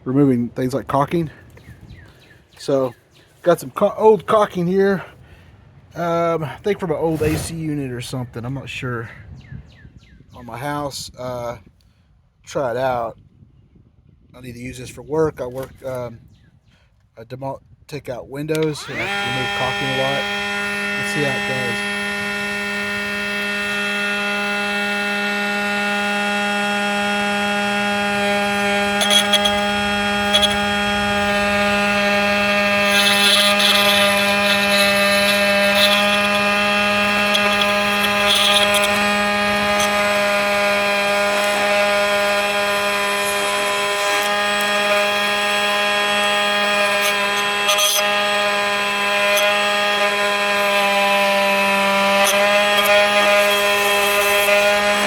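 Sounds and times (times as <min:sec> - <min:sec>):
blade scraping caulk off wall: 0:06.7 - 0:07.8, 0:18.6 - 0:55.0
oscillating multi-tool buzzing: 0:18.5 - 0:55.0.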